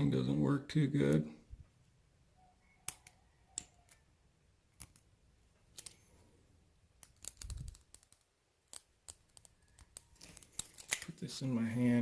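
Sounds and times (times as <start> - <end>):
small metal clicks on padlock: 7.0 - 11.1.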